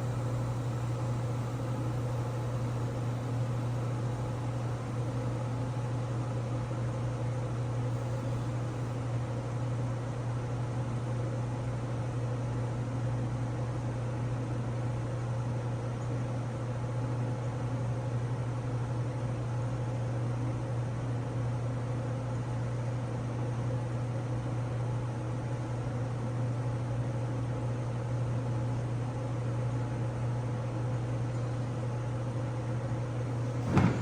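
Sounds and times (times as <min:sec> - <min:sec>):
nitrogen generator humming: 0:00.0 - 0:09.4, 0:33.2 - 0:34.0.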